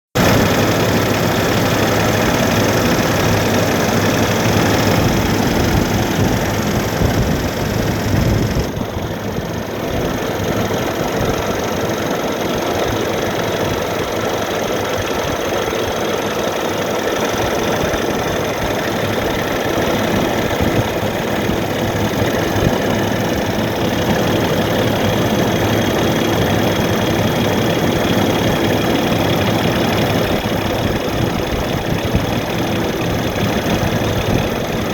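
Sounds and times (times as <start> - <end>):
diesel truck engine idling: 0.2 - 34.9.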